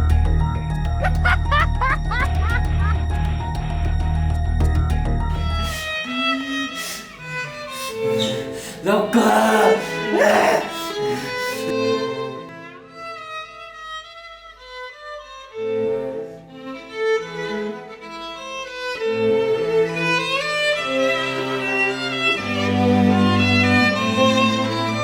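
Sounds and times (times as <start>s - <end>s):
violin and cello music: 5.3s - 8.8s, 10.8s - 25.0s.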